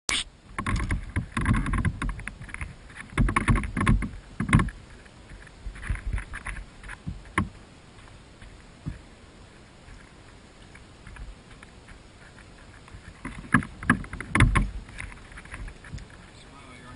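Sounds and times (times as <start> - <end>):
knocks against a kayak: 3.0 - 4.8, 13.3 - 14.8.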